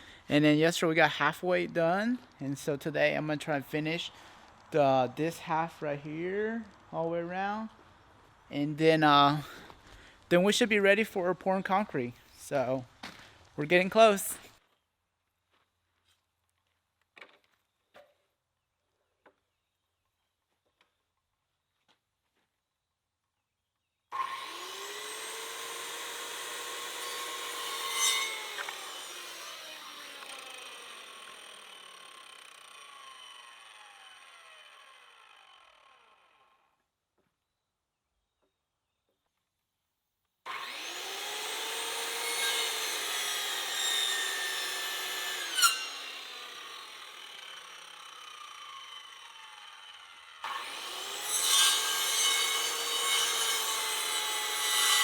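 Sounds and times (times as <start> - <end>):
power saw cutting wood: 24.1 - 36.6, 40.5 - 55.0.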